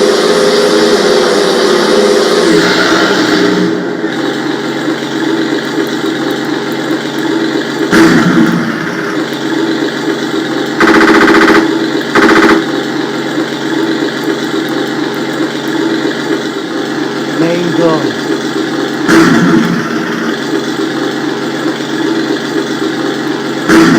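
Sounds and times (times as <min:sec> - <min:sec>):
simulated tank engine idling: 0:00.0 - 0:23.9
simulated machine-gun fire: 0:07.9 - 0:09.2, 0:10.8 - 0:13.0, 0:23.7 - 0:23.9.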